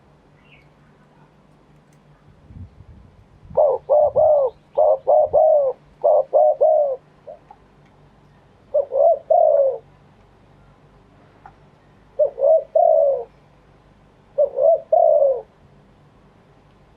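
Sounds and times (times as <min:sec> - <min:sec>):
dove cooing: 0:03.5 - 0:07.6, 0:08.6 - 0:10.0, 0:12.1 - 0:13.4, 0:14.3 - 0:15.6.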